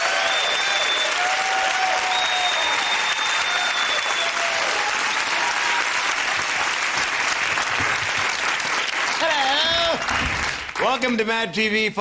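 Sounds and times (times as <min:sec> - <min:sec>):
long high whistle: 0:00.0 - 0:05.5
whoops: 0:00.0 - 0:06.1
audience applauding and cheering: 0:00.0 - 0:11.3.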